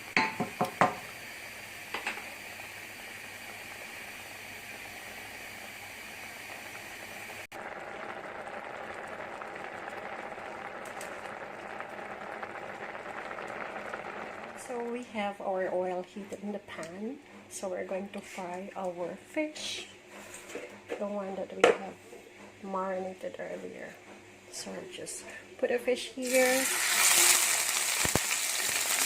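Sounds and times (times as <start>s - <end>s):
oil sizzling in a frying pan: 0.0s - 14.9s, 26.2s - 29.0s
sauce bubbling in a pan: 0.2s - 14.8s.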